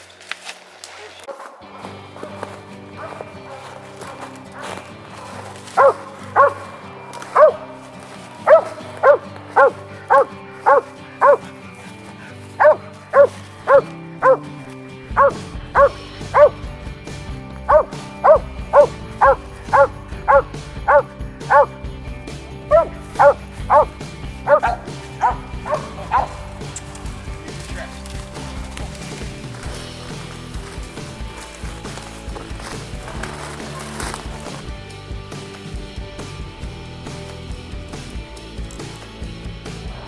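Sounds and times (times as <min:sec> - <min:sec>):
dog barking: 0:01.3 - 0:11.6, 0:12.4 - 0:16.7, 0:17.6 - 0:21.8, 0:22.7 - 0:26.8
background music: 0:01.3 - 0:40.0.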